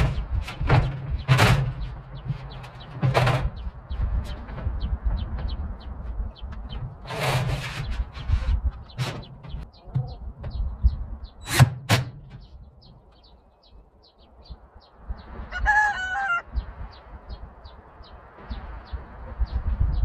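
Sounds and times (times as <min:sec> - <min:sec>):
rooster crowing: 0:15.5 - 0:16.5.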